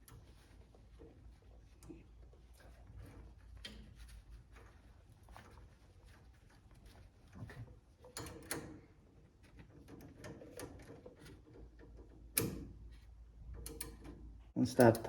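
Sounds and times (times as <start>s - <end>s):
wrench clicking and clinking: 14.7s - 15.0s.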